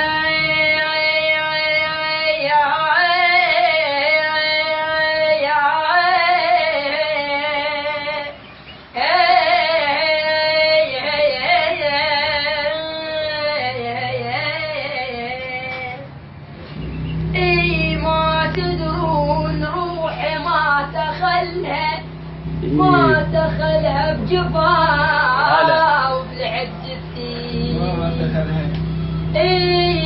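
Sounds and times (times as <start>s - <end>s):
child singing solo: 22.7s - 23.2s.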